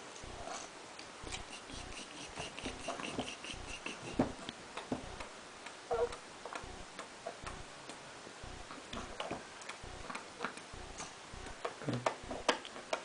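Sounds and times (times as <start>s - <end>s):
wet mouth chewing noises: 0.1s - 4.9s, 8.7s - 12.8s
squeaky vocal noise: 0.3s - 4.3s, 5.9s - 6.2s.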